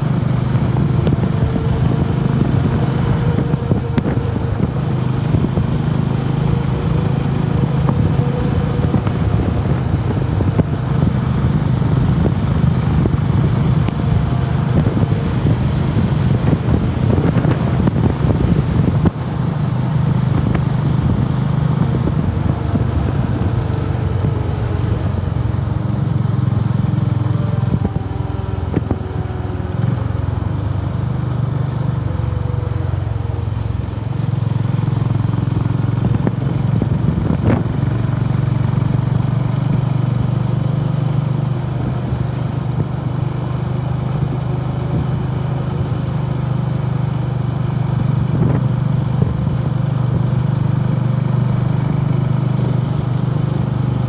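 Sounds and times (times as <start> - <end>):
motorcycle engine running: 0.0 - 54.0.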